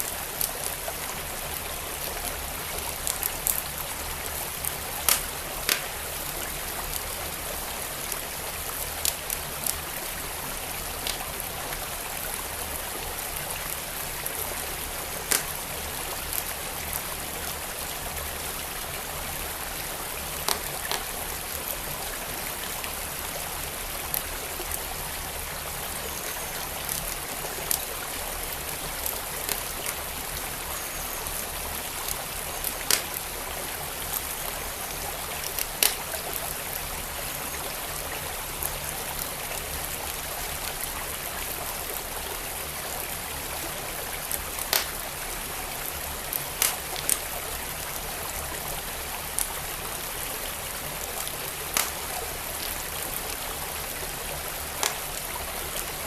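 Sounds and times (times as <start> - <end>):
flowing stream: 0.0 - 56.0
wood fire crackling: 0.1 - 7.4, 8.0 - 10.2, 10.9 - 11.3, 13.6 - 17.0, 20.2 - 21.8, 26.8 - 30.4, 31.4 - 34.5, 35.4 - 36.6, 44.1 - 48.1, 49.2 - 49.6, 51.0 - 53.9, 54.6 - 55.3.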